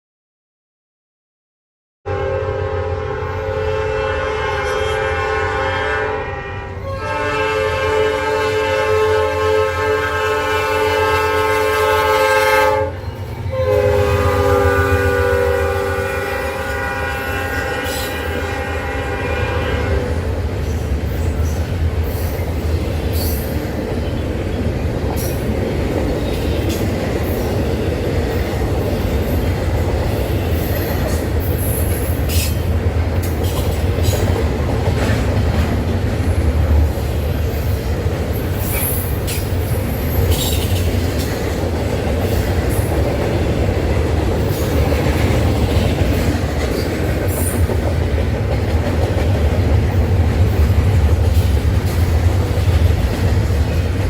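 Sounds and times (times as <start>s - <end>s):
train rumbling past: 2.1s - 54.0s
train wheel squeals: 28.9s - 32.7s, 38.5s - 41.2s.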